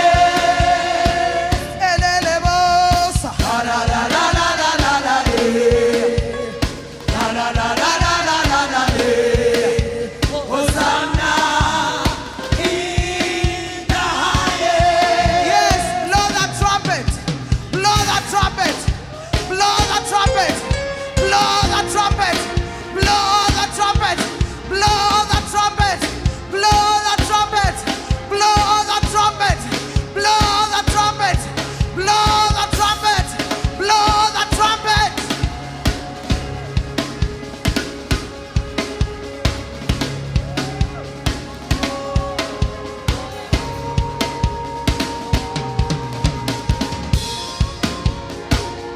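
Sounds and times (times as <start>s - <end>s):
voices singing held notes: 0.0s - 37.7s
steady drum beat: 0.0s - 48.9s
upbeat live band music: 0.0s - 48.9s.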